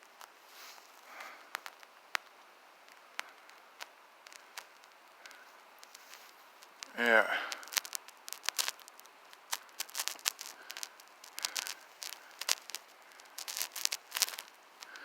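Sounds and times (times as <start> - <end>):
footsteps crunching frozen leaves: 0.4 - 1.6.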